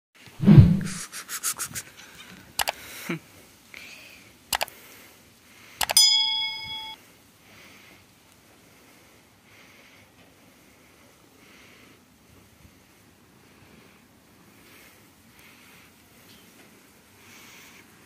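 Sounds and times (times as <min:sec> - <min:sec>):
sharp clicks and taps: 0:04.5 - 0:04.8, 0:05.8 - 0:06.0
metallic ding: 0:05.8 - 0:07.0.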